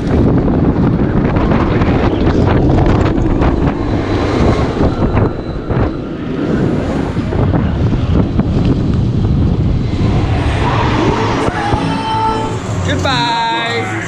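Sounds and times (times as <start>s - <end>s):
handling rumble: 0.0s - 13.0s
wind on microphone: 0.0s - 13.1s.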